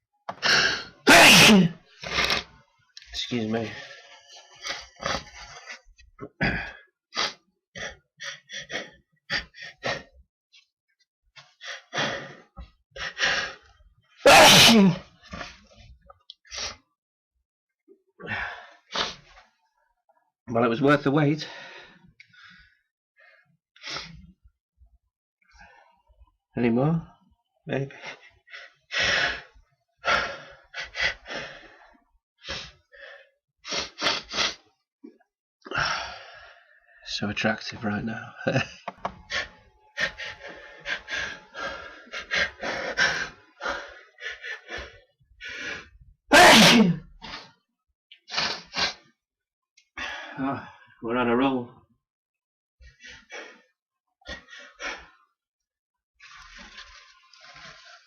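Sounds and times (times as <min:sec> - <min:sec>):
person sneezing: 0:01.1 - 0:02.4, 0:14.3 - 0:15.0, 0:46.3 - 0:47.1
drawn-in breaths: 0:03.6 - 0:10.2, 0:21.4 - 0:24.4, 0:39.3 - 0:46.0, 0:52.8 - 0:55.3
man gasping and huffing: 0:04.0 - 0:10.2.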